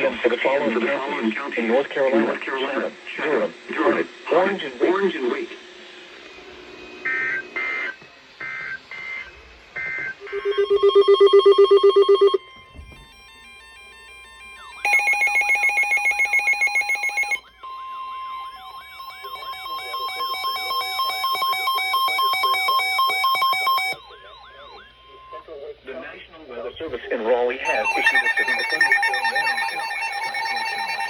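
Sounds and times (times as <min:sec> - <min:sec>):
steady warning alarm tone: 0:07.0 - 0:25.9, 0:27.6 - 0:31.0
warbling alarm: 0:07.1 - 0:25.6, 0:27.6 - 0:31.0
raspy digital header tones: 0:10.2 - 0:24.1, 0:27.7 - 0:31.0
loud pulsing beep: 0:10.2 - 0:25.4, 0:27.7 - 0:31.0.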